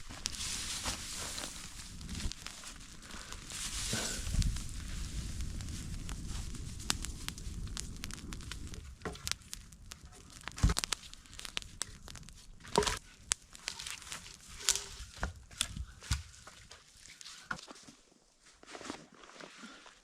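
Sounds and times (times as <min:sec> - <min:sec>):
campfire crackling and popping: 0:00.0 - 0:17.7.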